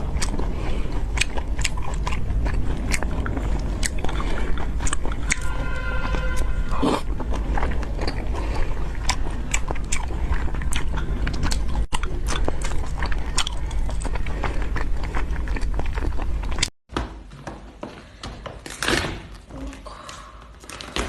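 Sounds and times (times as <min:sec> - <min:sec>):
mouth chewing and crunching: 0:00.0 - 0:16.8.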